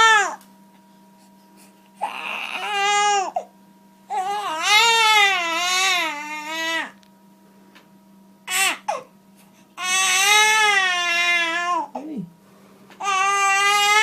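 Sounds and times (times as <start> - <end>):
baby crying: 0.0 - 0.4, 2.0 - 3.5, 4.1 - 7.0, 8.5 - 9.1, 9.8 - 12.0, 13.0 - 14.0.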